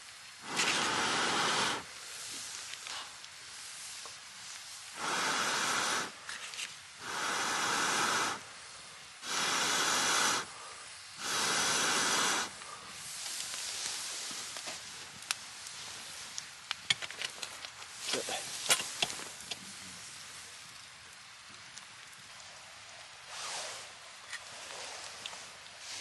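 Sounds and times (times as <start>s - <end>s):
rushing air hissing blasts: 0.0s - 6.3s, 6.9s - 16.4s, 23.2s - 26.0s.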